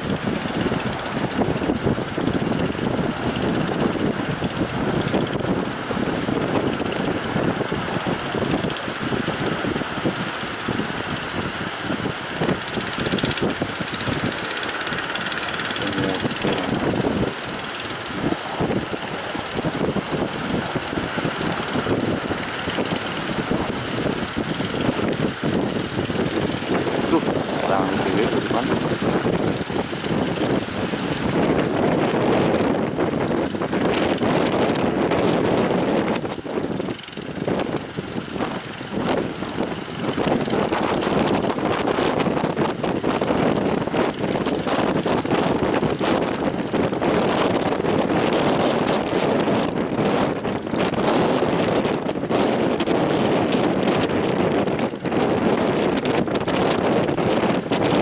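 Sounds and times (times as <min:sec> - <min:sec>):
steady rushing noise: 0:00.0 - 0:58.0
wind buffeting microphone: 0:00.0 - 0:58.0
waves rushing: 0:05.7 - 0:32.2.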